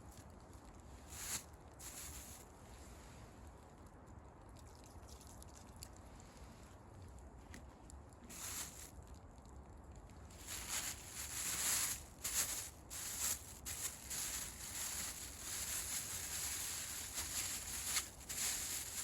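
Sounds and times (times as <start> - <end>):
rustling: 1.0 - 2.5, 8.2 - 9.0, 10.3 - 19.0.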